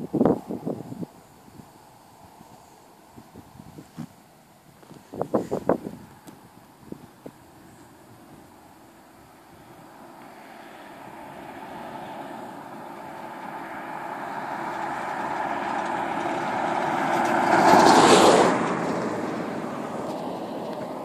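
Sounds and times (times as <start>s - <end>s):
motorcycle engine passing by: 10.4s - 21.0s.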